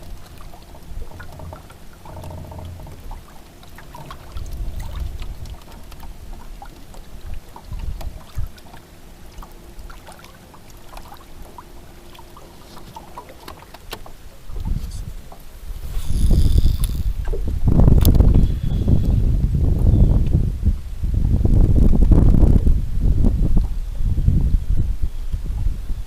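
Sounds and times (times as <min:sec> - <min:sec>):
boat hull knocking: 0:00.0 - 0:18.2
water noise: 0:00.0 - 0:26.0.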